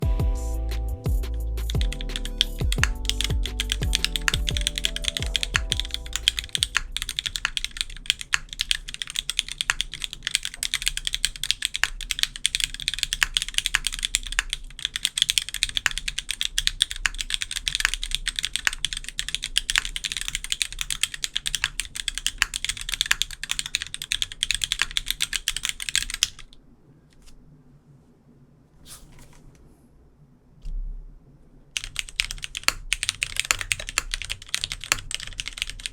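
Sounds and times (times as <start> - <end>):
music: 0.0 - 6.8
mechanical keyboard typing: 1.6 - 26.6, 31.8 - 35.9.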